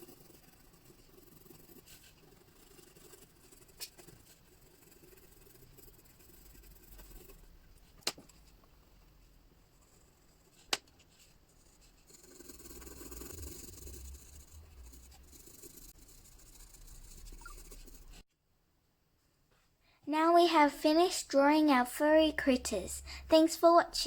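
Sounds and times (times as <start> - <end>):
colouring in on paper: 0.0 - 8.0, 9.6 - 18.2.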